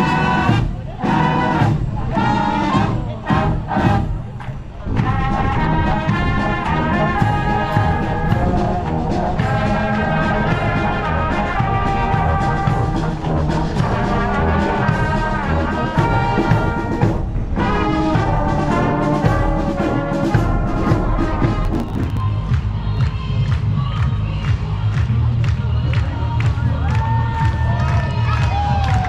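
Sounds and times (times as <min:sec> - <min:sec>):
brass band playing: 0:00.0 - 0:22.5.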